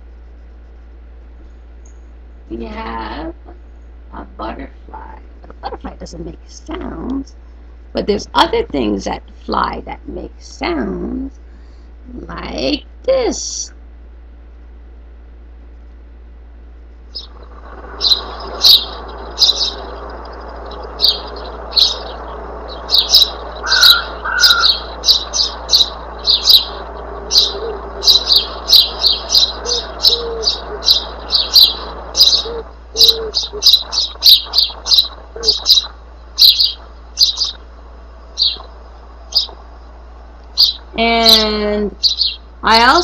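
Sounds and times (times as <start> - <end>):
steady background hiss: 0.0 - 43.0
bird chirping: 17.1 - 37.7, 38.3 - 39.9, 40.5 - 42.8.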